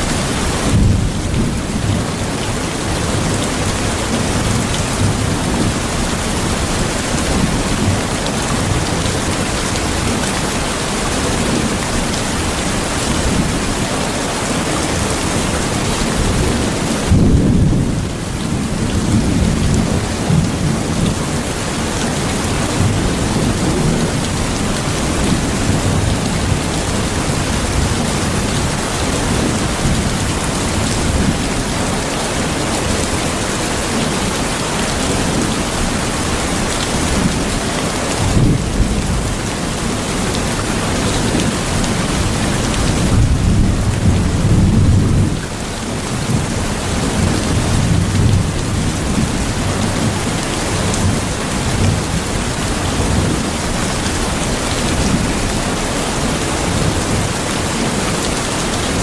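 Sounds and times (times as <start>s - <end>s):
heavy rain: 0.0s - 59.0s
thunder rumbling: 36.9s - 45.5s.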